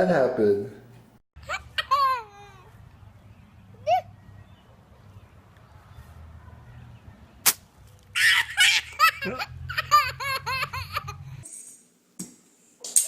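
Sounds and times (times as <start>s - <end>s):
child laughing: 1.4s - 2.8s, 3.8s - 4.1s, 8.2s - 11.4s.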